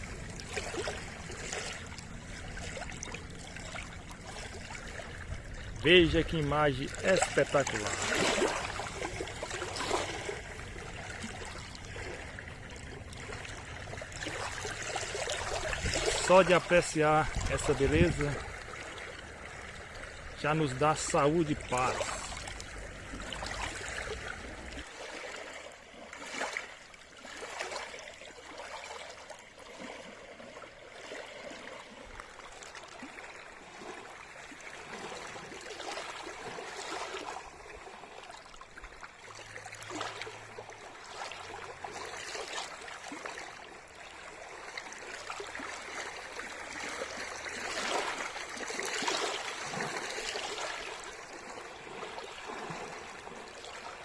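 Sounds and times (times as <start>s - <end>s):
waves lapping on rocks: 0.0s - 54.0s.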